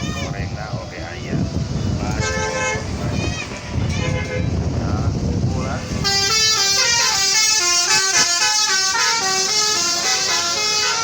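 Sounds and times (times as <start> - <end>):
bus musical horn tune: 2.2 - 3.0, 3.9 - 4.6, 6.0 - 11.0.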